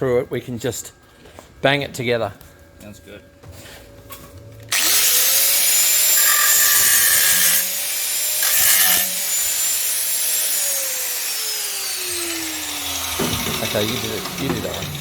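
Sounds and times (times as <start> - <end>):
angle grinder cutting steel: 4.7 - 15.0.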